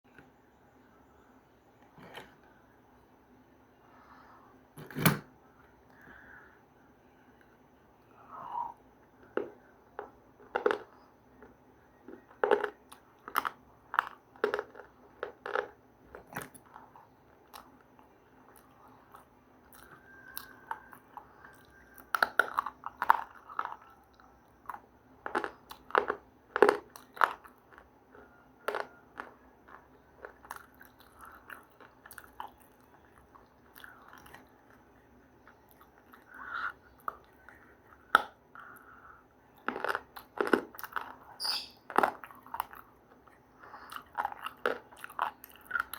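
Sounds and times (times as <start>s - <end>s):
person chewing crunchy food: 8.4s - 45.9s.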